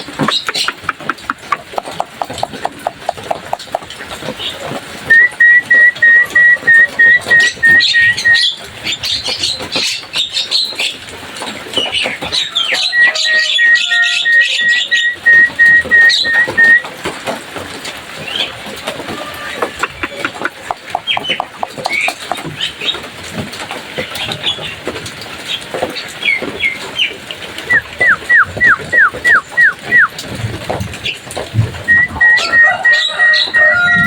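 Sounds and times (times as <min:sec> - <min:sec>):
bird harsh chattering: 0:00.1 - 0:03.9, 0:19.6 - 0:22.8.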